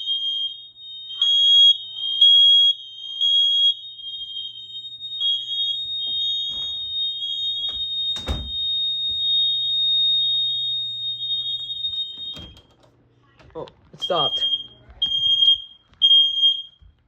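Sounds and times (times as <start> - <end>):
shrill alarm tone: 0.0 - 12.6.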